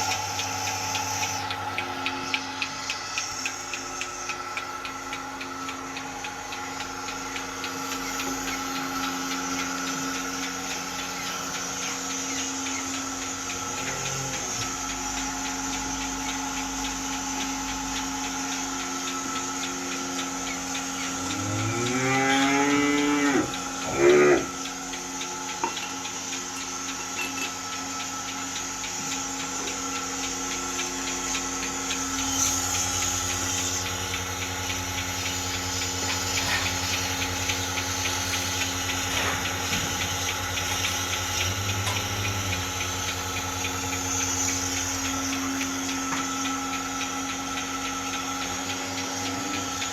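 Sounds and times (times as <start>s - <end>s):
milking machine motor humming: 0.0s - 49.9s
cow mooing: 21.3s - 24.6s.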